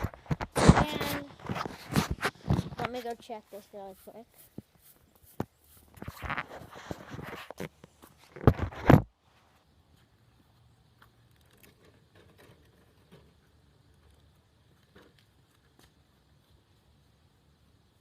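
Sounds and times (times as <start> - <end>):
rustling and knocking on microphone: 0.0 - 3.3, 4.4 - 9.2.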